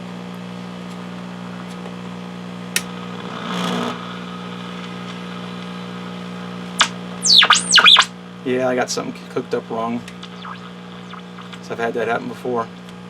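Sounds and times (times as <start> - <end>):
radio speaker low hum: 6.8 - 8.1, 10.1 - 11.8
short rush of noise: 10.3 - 11.6.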